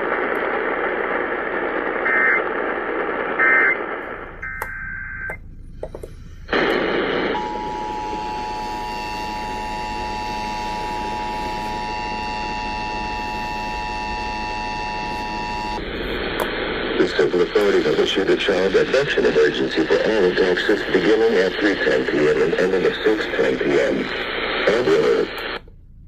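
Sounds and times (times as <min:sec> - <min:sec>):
radio hiss: 0:00.0 - 0:25.7
clicks: 0:04.0 - 0:06.8.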